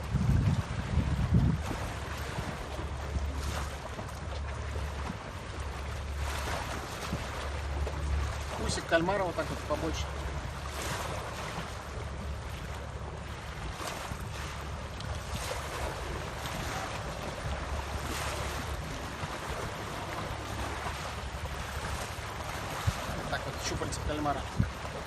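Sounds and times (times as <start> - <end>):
wind on microphone: 0.0 - 8.8, 9.5 - 25.0
sea waves washing on shore: 0.0 - 25.0.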